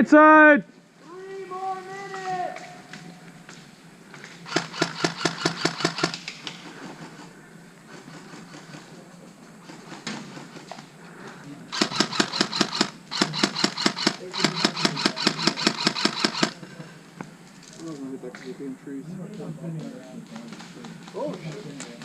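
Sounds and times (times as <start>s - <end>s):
airsoft rifle rapid fire: 4.4s - 6.3s, 11.7s - 16.6s.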